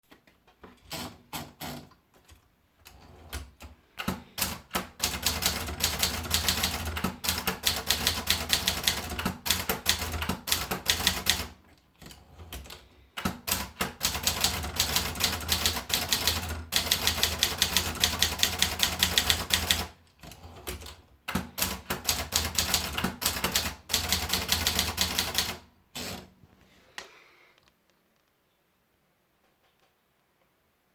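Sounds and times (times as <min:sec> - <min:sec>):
manual typewriter key strikes: 0:04.0 - 0:19.9.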